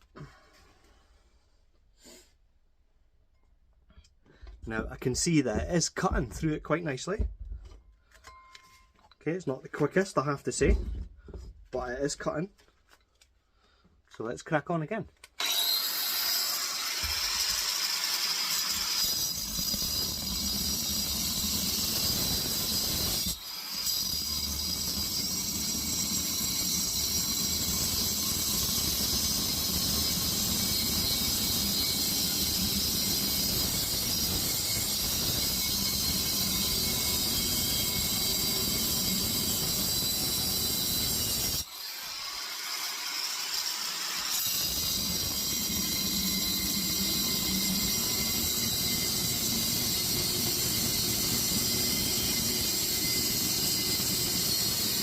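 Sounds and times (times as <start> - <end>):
angle grinder squealing: 15.4 - 55.0.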